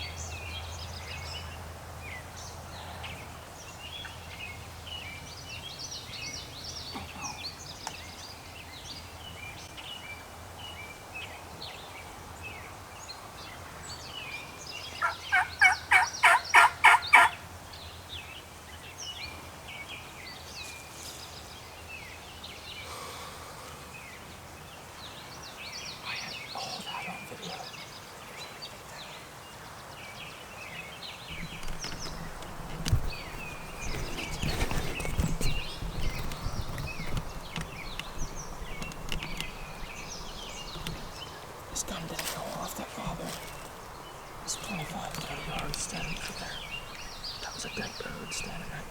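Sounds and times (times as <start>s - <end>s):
songbirds chirping: 0.0s - 48.9s
turkey gobbling: 15.0s - 17.4s.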